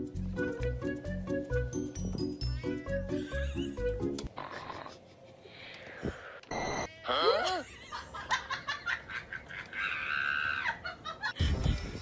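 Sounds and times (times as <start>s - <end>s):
person laughing: 2.6s - 5.4s, 7.2s - 11.8s.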